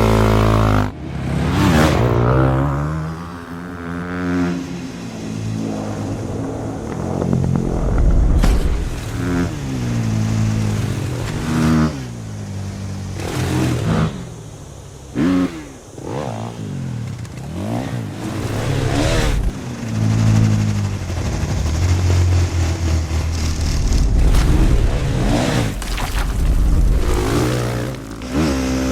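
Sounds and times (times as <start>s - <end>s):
motorbike engine revving: 0.0s - 28.9s.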